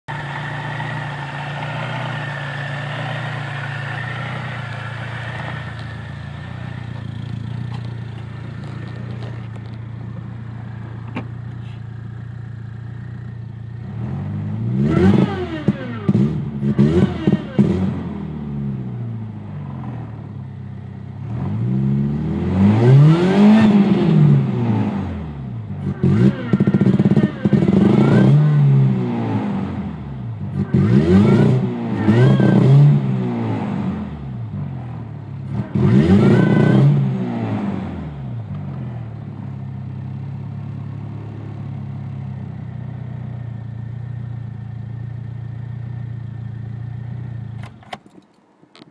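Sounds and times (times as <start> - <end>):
misfiring car engine revving: 0.0 - 11.6, 12.2 - 18.3, 35.5 - 38.0.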